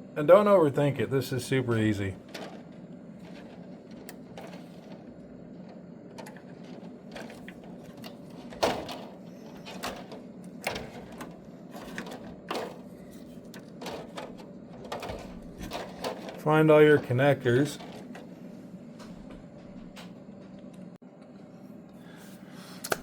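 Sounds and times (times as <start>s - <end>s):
steady low hum: 0.0s - 23.0s
clicks and knocks of small parts: 2.3s - 5.0s.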